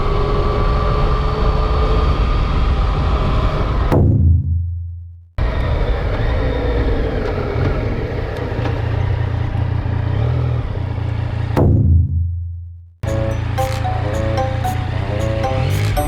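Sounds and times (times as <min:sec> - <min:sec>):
music: 0:13.0 - 0:16.0.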